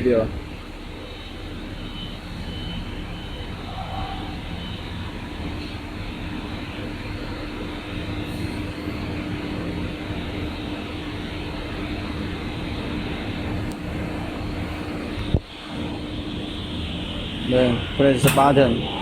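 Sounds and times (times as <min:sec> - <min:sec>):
machine droning hum: 0:00.0 - 0:19.0.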